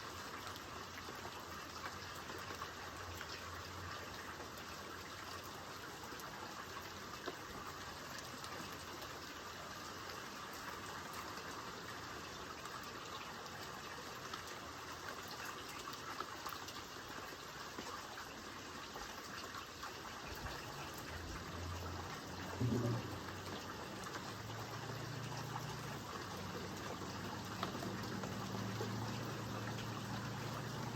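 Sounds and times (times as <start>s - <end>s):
rain hissing: 20.6s - 30.9s
raindrops ticking: 20.6s - 30.9s.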